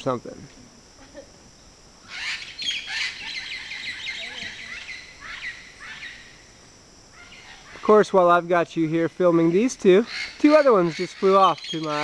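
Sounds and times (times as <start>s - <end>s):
crickets chirring: 0.0s - 12.0s
parrots squawking: 2.0s - 6.3s, 7.1s - 7.8s, 10.0s - 12.0s.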